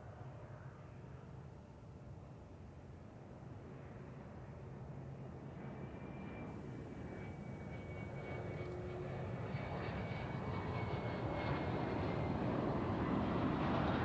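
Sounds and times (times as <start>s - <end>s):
jet airliner engines rumbling: 3.6s - 14.0s.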